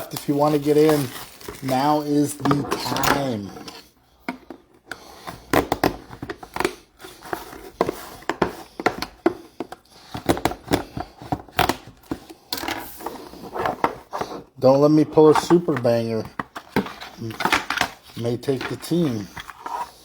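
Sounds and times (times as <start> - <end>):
wrappers crinkling and tearing: 0.0 - 3.4
cards rustling and clicking: 0.0 - 3.7, 15.3 - 20.0.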